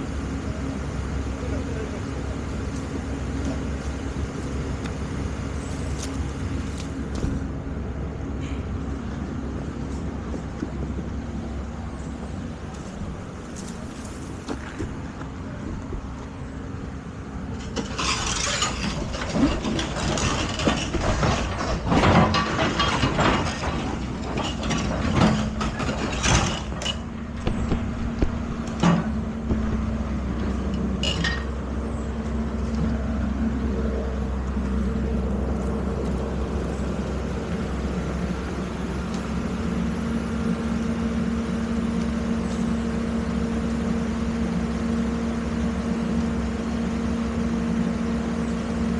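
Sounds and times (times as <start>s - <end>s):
excavator engine running: 0.0s - 48.9s
sharp metal clanks and knocks: 17.6s - 27.8s, 30.7s - 31.6s.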